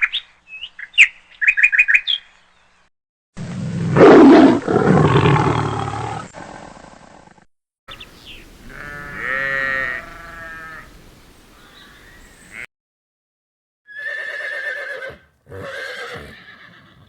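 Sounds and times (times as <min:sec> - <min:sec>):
wavering bleat: 0:08.7 - 0:10.9, 0:14.4 - 0:17.0.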